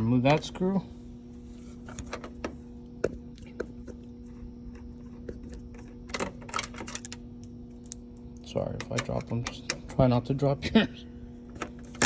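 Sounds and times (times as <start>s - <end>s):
steady low hum: 0.0s - 12.0s.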